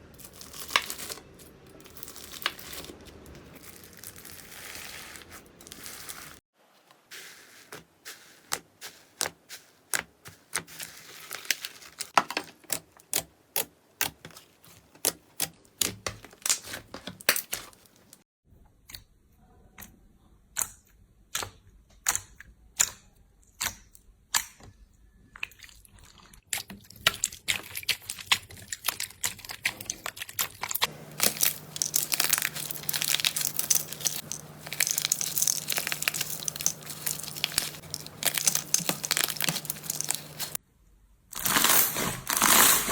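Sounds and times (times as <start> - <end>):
slime crackling and crinkling: 0.1 - 13.2, 14.0 - 18.2, 27.0 - 40.6, 41.4 - 42.9
slime sticky popping: 31.2 - 40.6.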